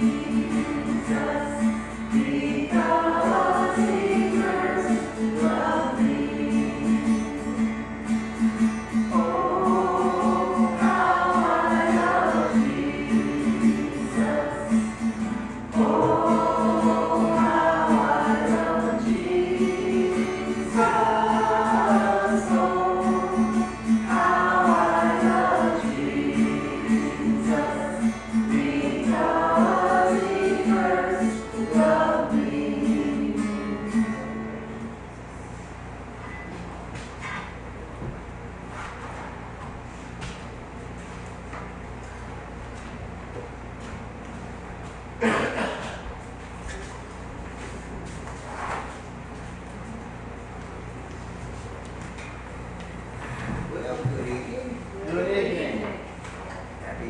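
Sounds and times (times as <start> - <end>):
group singing gospel song: 0.0 - 35.0.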